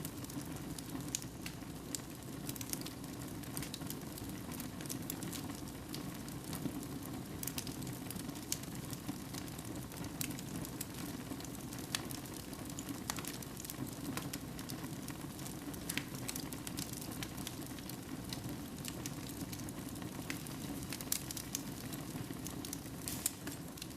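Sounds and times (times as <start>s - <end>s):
burning wood crackling and popping: 0.0s - 23.9s
flames rushing: 14.7s - 23.9s.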